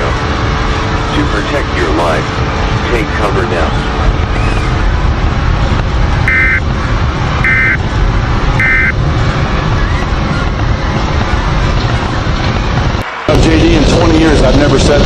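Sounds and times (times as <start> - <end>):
steady low rumbling noise: 0.0 - 15.0
short data tone blips: 6.3 - 6.6, 7.4 - 7.8, 8.6 - 9.0.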